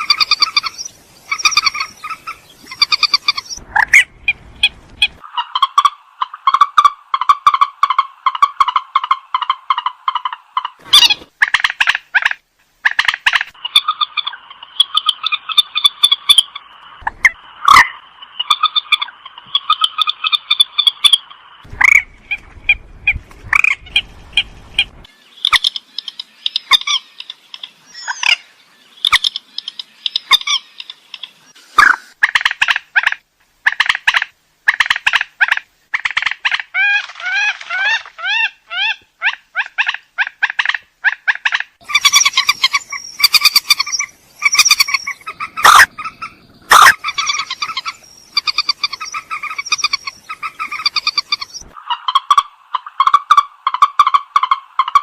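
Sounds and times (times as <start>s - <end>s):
rail bird calls: 0.0s - 55.0s
low rumble: 21.7s - 25.1s.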